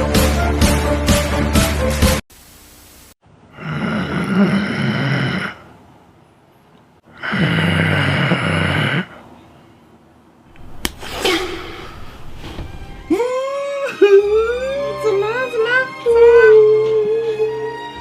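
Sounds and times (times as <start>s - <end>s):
person snoring: 3.5s - 5.7s, 7.1s - 9.2s.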